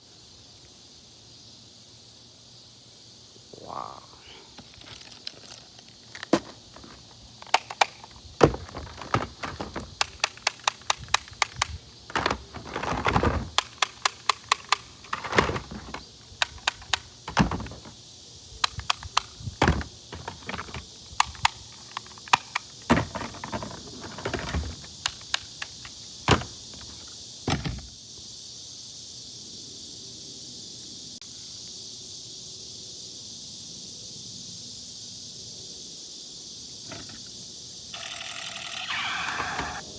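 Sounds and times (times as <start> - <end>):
toy blaster rasping: 4.6 - 12.5, 13.5 - 17.9, 37.9 - 39.9
toy blaster clicks and thunks: 4.6 - 18.0, 18.6 - 27.9, 38.0 - 39.8.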